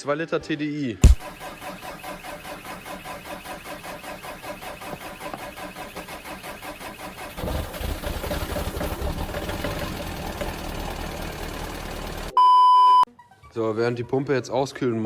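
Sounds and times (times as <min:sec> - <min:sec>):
oil pump chugging: 0:01.1 - 0:12.4.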